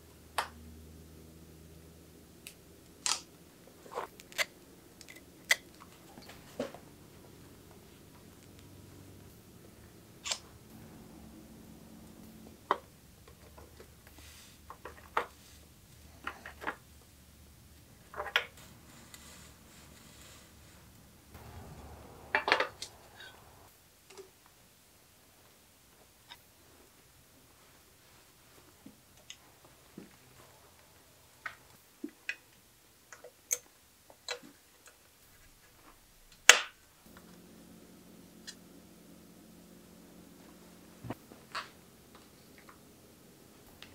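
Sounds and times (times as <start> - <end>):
low steady hum: 0.0 - 23.8, 36.0 - 43.9.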